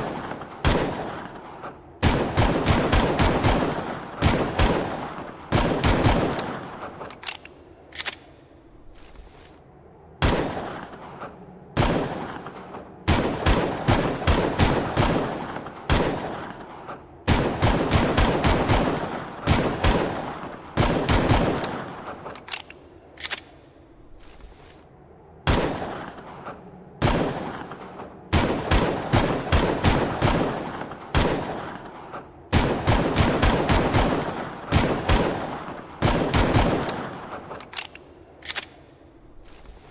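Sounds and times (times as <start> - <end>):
pistol shots with echo: 0.0 - 7.0, 25.5 - 37.4.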